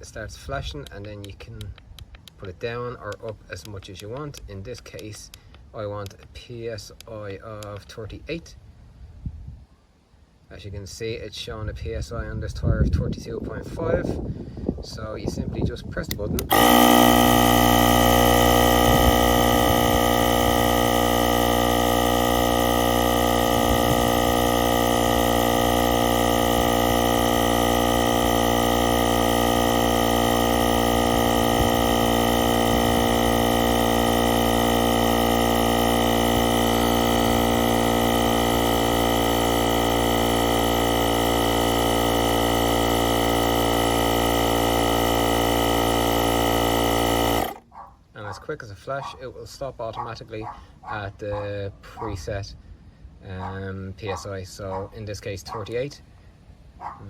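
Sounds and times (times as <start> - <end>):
tyre inflator compressor drone: 16.4 - 47.8.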